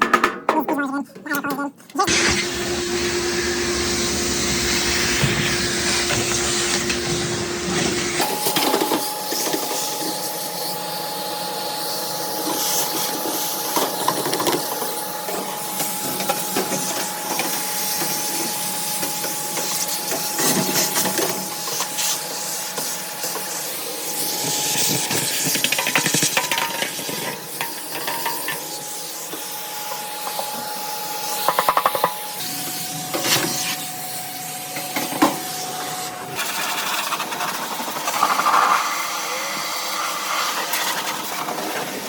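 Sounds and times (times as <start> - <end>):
vacuum cleaner running: 2.0 - 42.0.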